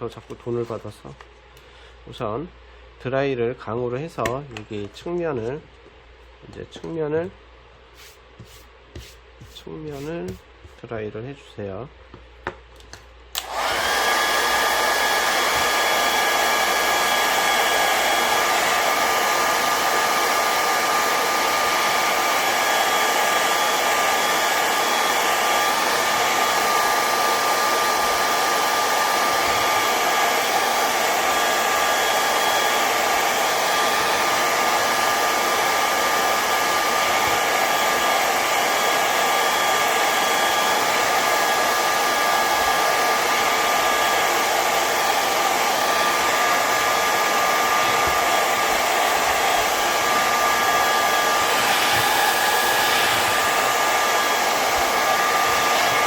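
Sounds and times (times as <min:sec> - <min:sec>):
hair dryer blowing with high whine: 0:13.3 - 0:56.0.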